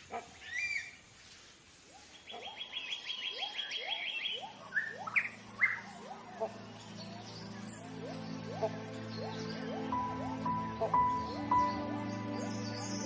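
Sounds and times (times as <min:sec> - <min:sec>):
birds chirping: 0:00.0 - 0:13.0
bird whistled notes: 0:02.4 - 0:13.0
soft background music: 0:04.3 - 0:13.0.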